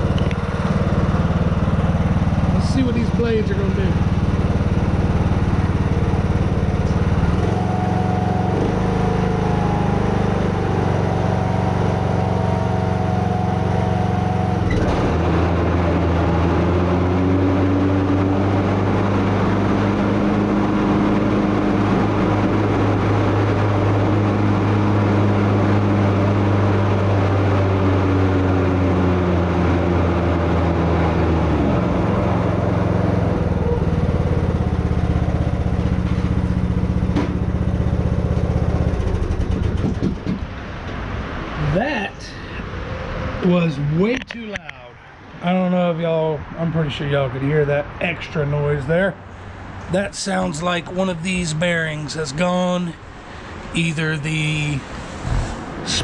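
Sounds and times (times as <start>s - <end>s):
lawn tractor engine running: 0.0s - 41.0s
mower deck whining: 0.0s - 42.1s.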